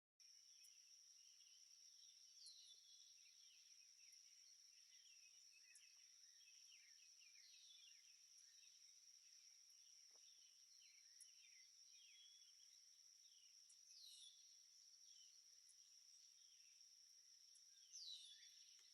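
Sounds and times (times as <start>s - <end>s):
crickets trilling: 0.3s - 18.9s
bird chirps: 0.5s - 16.8s, 17.5s - 18.9s.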